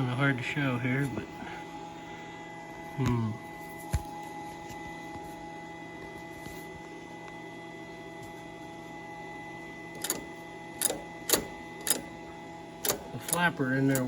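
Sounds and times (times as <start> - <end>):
steady electrical hum: 0.0 - 14.0
throttle linkage clicks: 10.0 - 12.1, 12.8 - 14.0.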